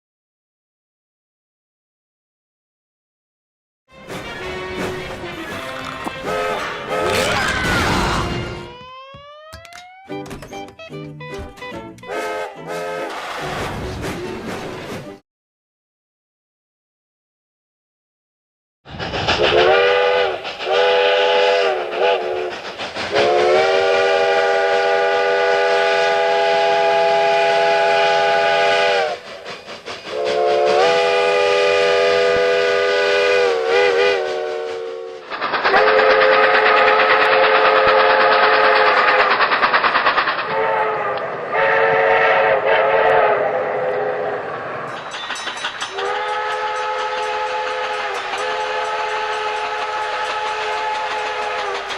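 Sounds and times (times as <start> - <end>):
steam locomotive chime whistle: 12.0 - 13.4, 19.4 - 39.2, 40.5 - 51.9.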